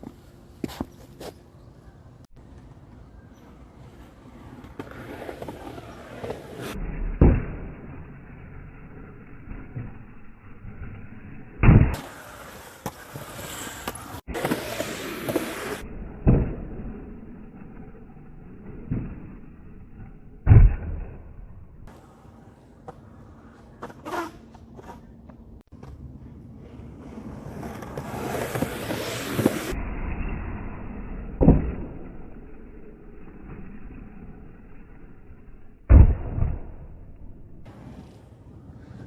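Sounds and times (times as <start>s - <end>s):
skateboard wheels rolling on concrete: 0.0s - 39.0s
skateboard impacts: 2.4s - 7.9s, 11.6s - 17.7s, 18.3s - 29.8s.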